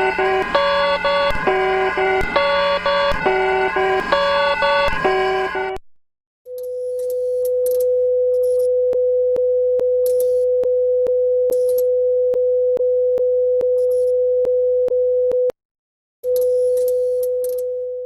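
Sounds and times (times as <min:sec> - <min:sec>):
steady alarm tone: 0:00.0 - 0:05.8.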